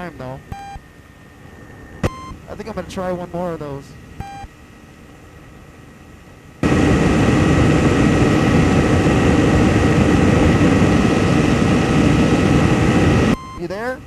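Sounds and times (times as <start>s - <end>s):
two-stroke aircraft engine: 5.0s - 13.4s
rushing air: 6.6s - 13.4s.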